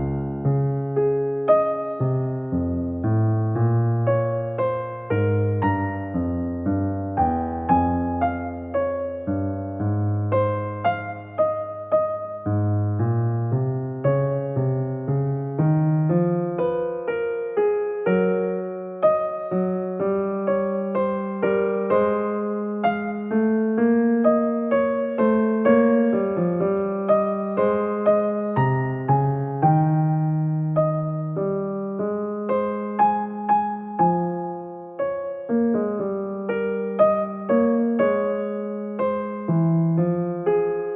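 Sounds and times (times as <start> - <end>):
calm solo piano: 0.0 - 40.9.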